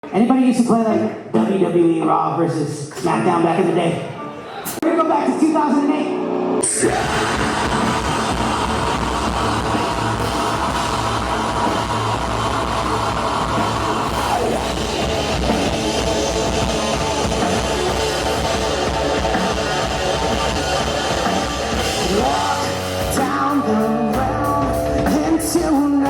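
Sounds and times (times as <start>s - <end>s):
distorted electric guitars: 4.1s - 26.0s
bass guitar: 6.1s - 26.0s
drum kit: 6.1s - 26.0s.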